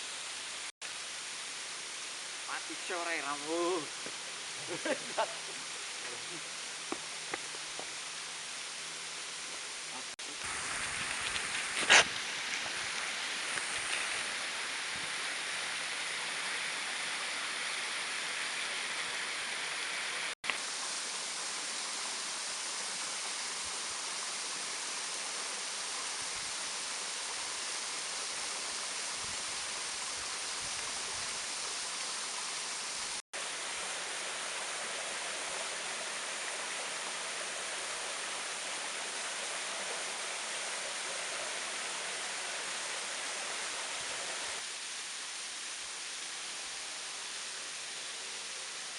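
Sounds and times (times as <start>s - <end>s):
waterfall rushing: 9.8s - 44.7s.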